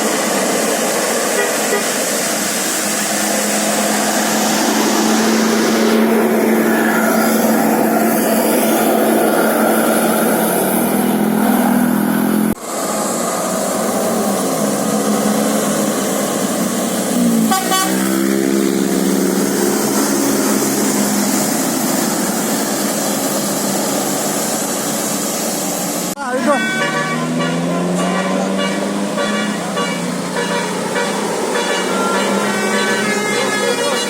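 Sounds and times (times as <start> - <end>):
musical bus horn playing a tune: 1.3 - 2.0, 17.4 - 18.2, 26.3 - 34.0.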